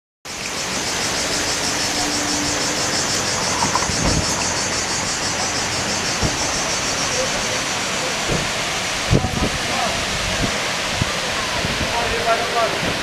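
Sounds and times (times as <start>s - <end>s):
fast-pulsing high buzz: 0.3s - 9.0s
waterfall roaring: 0.3s - 13.0s
low thump: 3.5s - 4.4s.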